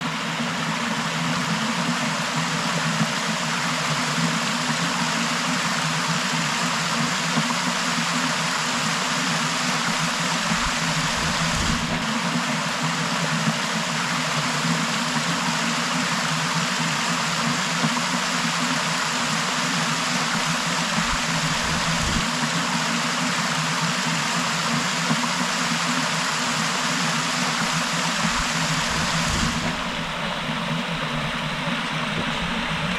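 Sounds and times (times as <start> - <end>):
waterfall rushing: 20.1 - 22.2, 26.9 - 32.9.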